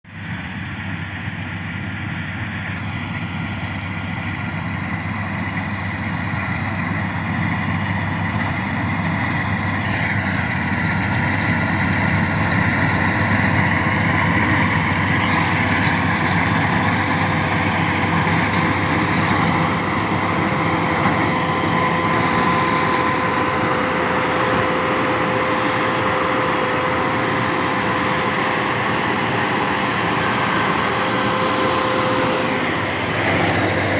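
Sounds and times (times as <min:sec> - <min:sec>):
combine harvester engine drone: 0:00.1 - 0:33.9.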